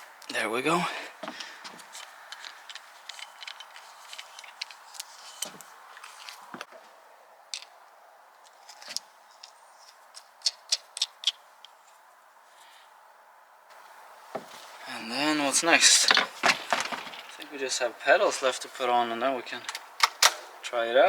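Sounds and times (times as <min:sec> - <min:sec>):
hands handling parts clicking: 0:01.2 - 0:06.7, 0:07.5 - 0:11.9.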